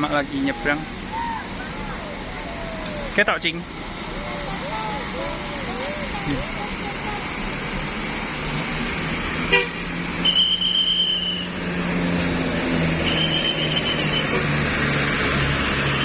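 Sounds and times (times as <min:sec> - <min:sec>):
bus engine running: 0:00.0 - 0:16.0
bus horn toots: 0:09.4 - 0:11.7, 0:12.9 - 0:14.6.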